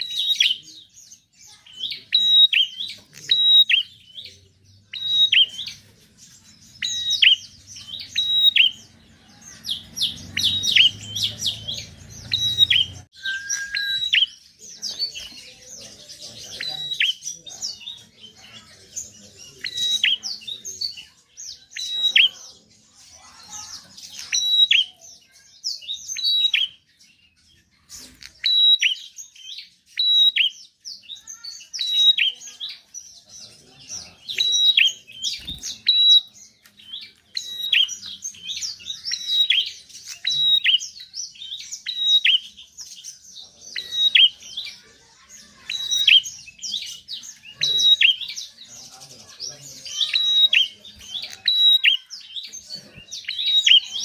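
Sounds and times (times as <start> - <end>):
bird singing sharp chirps: 0.0 - 18.3.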